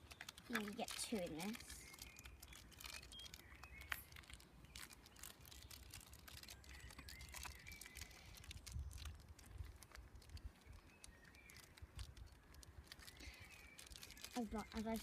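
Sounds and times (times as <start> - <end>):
plastic packaging crinkling: 0.0 - 15.0
wind on microphone: 8.4 - 11.2.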